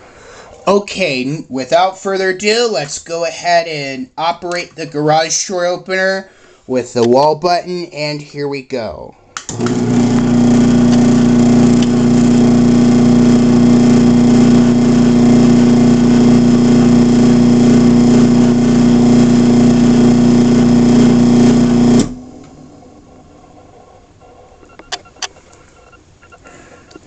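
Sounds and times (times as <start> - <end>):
garage door opener motor humming: 9.5 - 24.7.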